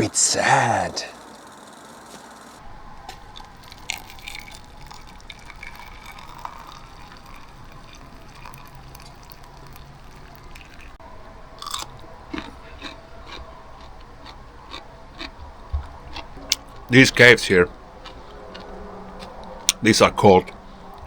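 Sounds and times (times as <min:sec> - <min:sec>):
camping stove burner humming: 0:00.0 - 0:03.9
water ticking and popping: 0:03.4 - 0:11.0.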